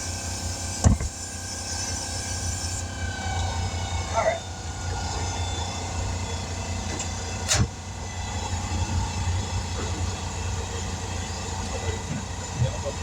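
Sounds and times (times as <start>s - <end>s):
motor humming: 0.3s - 4.1s.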